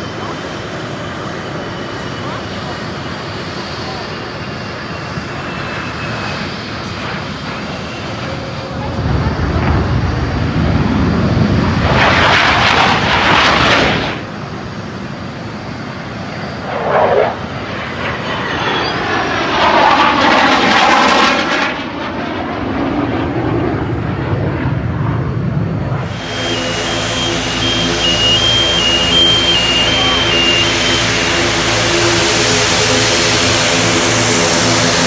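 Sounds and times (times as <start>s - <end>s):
aircraft flying past: 0.0s - 35.0s.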